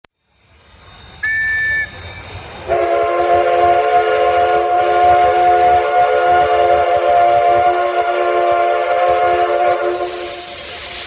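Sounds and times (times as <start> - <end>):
steam locomotive whistle: 2.6 - 11.0.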